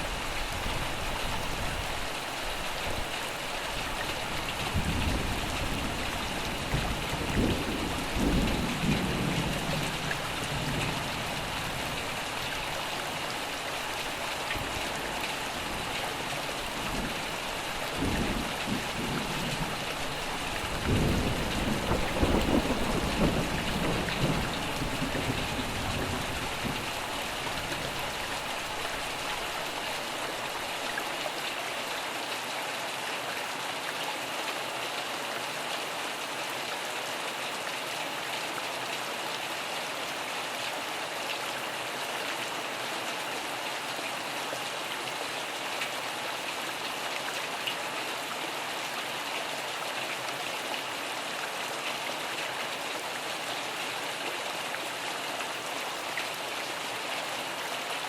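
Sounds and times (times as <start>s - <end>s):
steady rain falling: 0.0s - 58.0s
thunder rumbling low: 20.6s - 26.8s.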